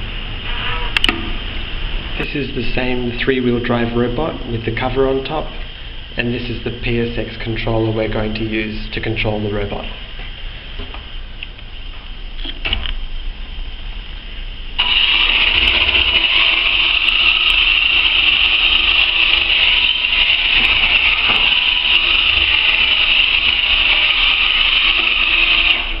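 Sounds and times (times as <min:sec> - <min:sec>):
electric motors whirring: 0:14.8 - 0:26.0.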